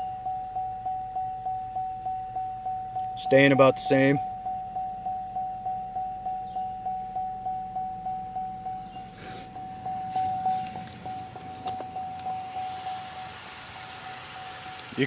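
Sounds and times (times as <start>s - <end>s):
car warning chime dinging: 0.0s - 15.0s
faint engine idling: 0.0s - 15.0s
rustling and knocks: 9.2s - 12.4s.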